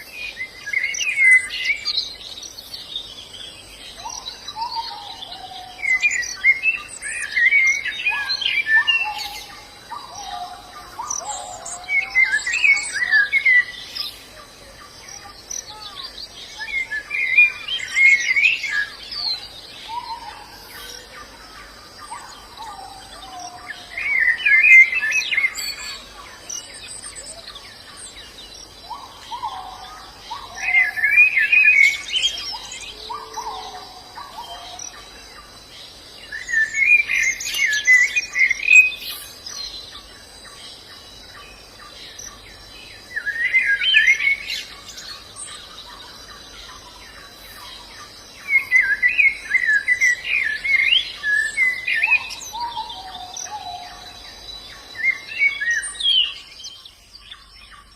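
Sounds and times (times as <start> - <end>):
birds twittering: 0.0 - 57.9
faint high insect whine: 0.0 - 57.9.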